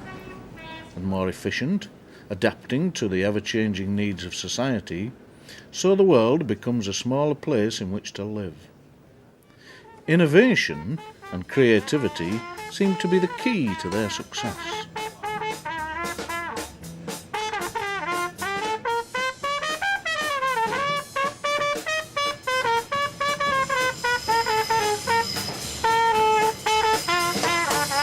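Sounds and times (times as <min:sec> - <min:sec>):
trumpet playing lively melody: 0:09.9 - 0:28.0
light rhythm backing: 0:10.2 - 0:28.0.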